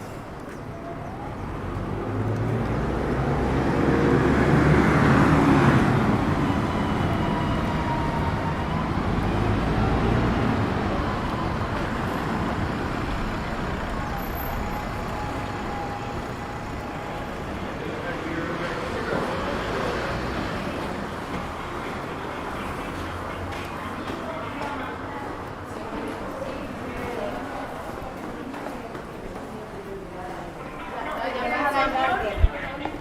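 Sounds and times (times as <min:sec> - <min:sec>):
vehicle driving past: 0:01.6 - 0:22.5.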